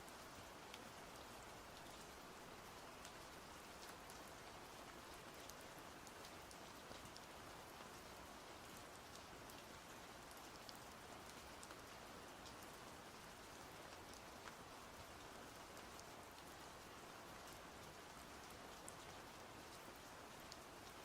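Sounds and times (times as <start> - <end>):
faint steady rain: 0.0 - 21.0
raindrop ticks: 3.0 - 4.3.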